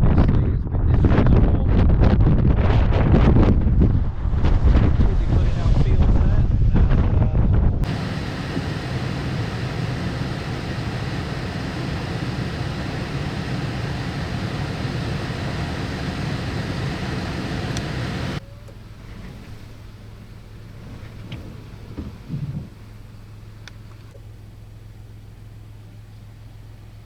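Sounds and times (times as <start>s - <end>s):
low hum: 2.5s - 27.0s
car road and engine noise: 7.8s - 27.0s.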